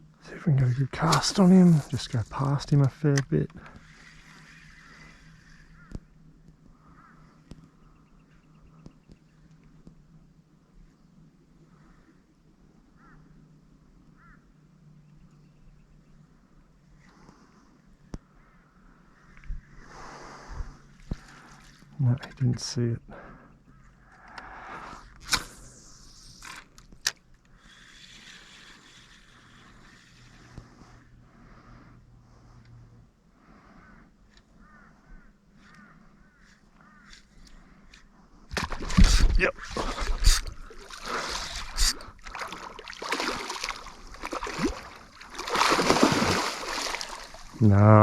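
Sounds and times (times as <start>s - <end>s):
fishing reel whirring: 3.7s - 6.0s, 25.0s - 30.6s, 38.9s - 42.2s
sharp clicks of fishing tackle: 24.1s - 30.7s, 37.0s - 42.3s
water splashing around boat: 38.5s - 47.6s.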